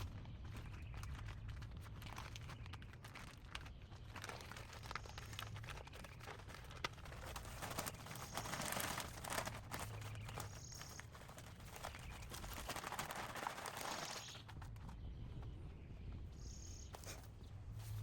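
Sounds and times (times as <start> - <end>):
crinkling and rustling: 0.0 - 18.0.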